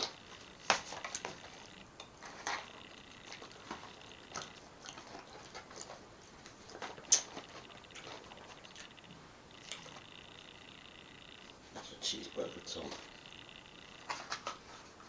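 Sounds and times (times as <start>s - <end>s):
chewing with clicks and crackles: 0.0s - 14.9s.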